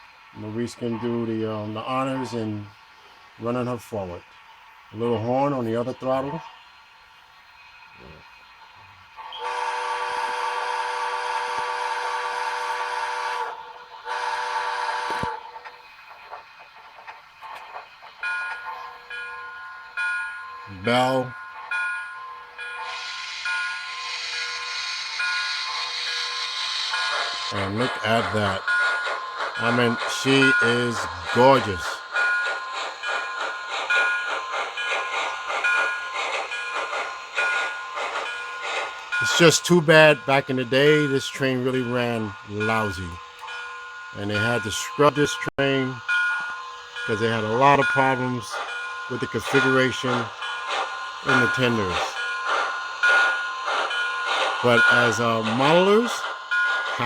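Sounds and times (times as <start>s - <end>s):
model steam train chuffing: 0.0s - 57.0s
model train steam whistle: 9.2s - 15.5s, 22.8s - 28.6s.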